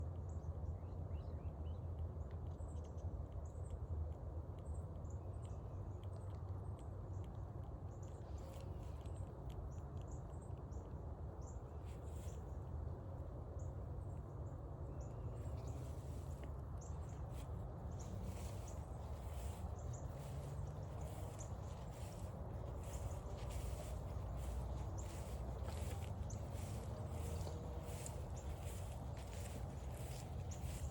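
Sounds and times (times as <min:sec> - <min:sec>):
low outdoor rumble: 0:00.3 - 0:30.9
footsteps on a forest trail: 0:15.5 - 0:30.9
bird chirps: 0:17.9 - 0:30.9.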